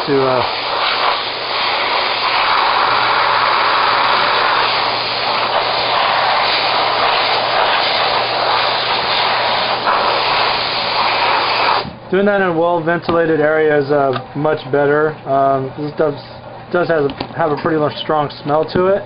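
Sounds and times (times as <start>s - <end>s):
compressed air hissing: 0.0s - 12.0s.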